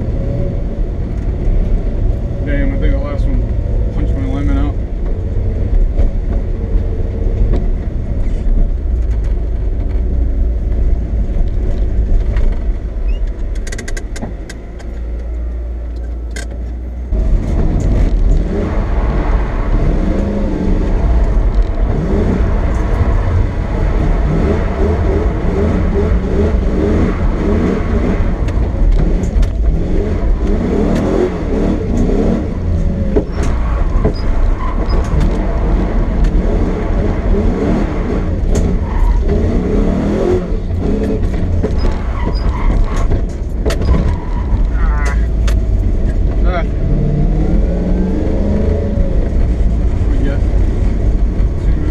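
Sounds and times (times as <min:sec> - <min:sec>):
car engine revving: 0:17.0 - 0:51.9.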